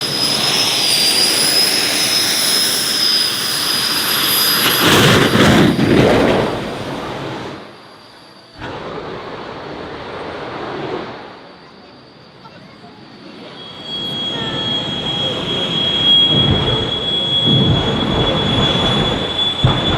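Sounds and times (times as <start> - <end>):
jet turbine whine: 0.0 - 19.9
whooshing roar of flames: 4.2 - 7.8, 8.5 - 11.6, 13.6 - 19.9.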